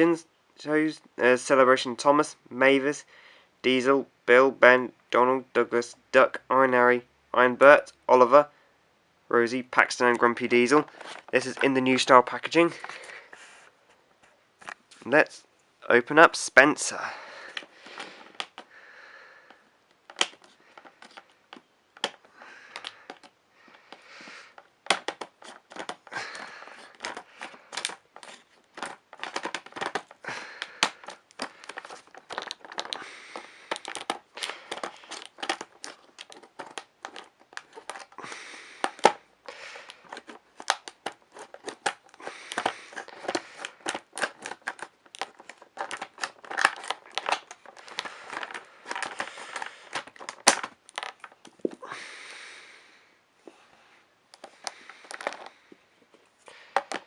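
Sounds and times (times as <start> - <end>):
packaging crinkling and rustling: 10.2 - 13.8, 20.0 - 51.8, 54.4 - 55.6.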